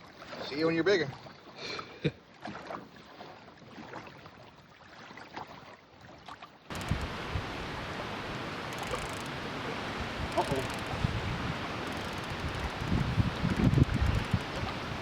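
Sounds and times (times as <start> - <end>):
rush of wind and water: 0.0 - 15.0
light knocks and splashes: 1.1 - 7.3.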